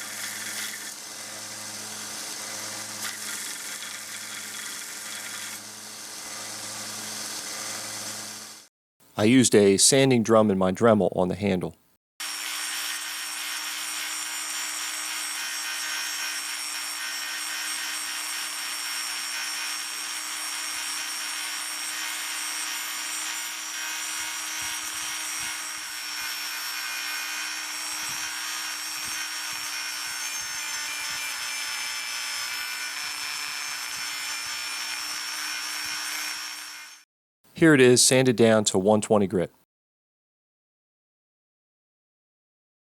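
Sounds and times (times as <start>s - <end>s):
rotary tool sanding metal: 0.0s - 8.7s, 12.2s - 37.0s.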